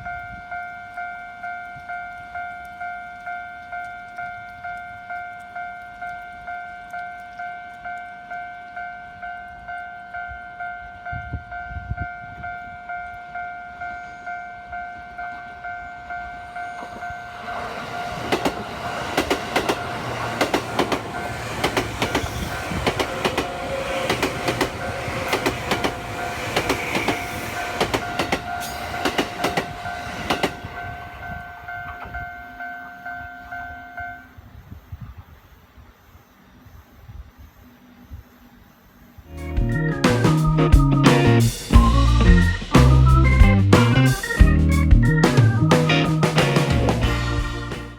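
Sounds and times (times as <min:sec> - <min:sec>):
train wheels clacking over rail joints: 0:16.8 - 0:32.5.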